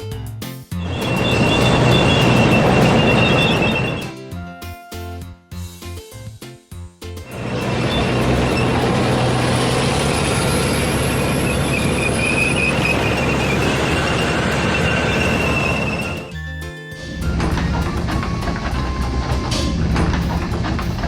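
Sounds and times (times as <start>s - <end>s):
heavy machinery rumble: 0.8s - 4.1s, 7.3s - 16.3s, 17.1s - 21.0s
high metallic squeal: 0.8s - 4.3s, 7.3s - 20.4s.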